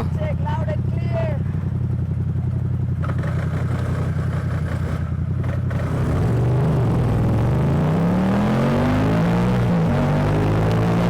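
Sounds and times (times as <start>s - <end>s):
motorcycle engine accelerating: 0.0s - 11.0s.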